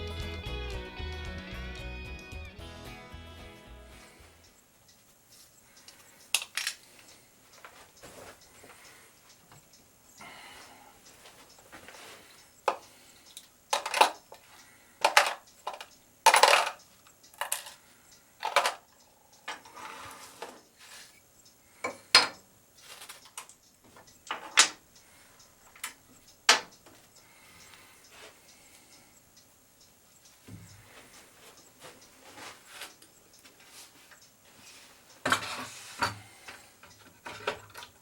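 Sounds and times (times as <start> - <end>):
small metal objects clinking: 13.4 - 14.2, 15.0 - 17.8.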